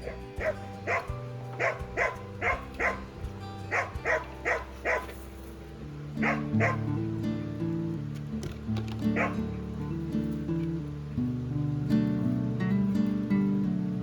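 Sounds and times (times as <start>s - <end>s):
dog barking: 0.0s - 5.3s, 6.2s - 7.1s, 9.2s - 10.0s
background music: 0.0s - 14.0s.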